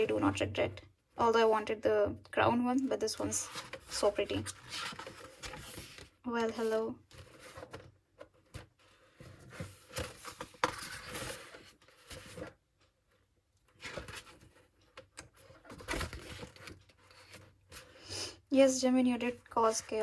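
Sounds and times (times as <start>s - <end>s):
pages rustling and sliding: 3.3s - 6.1s, 8.8s - 12.5s, 13.8s - 14.7s.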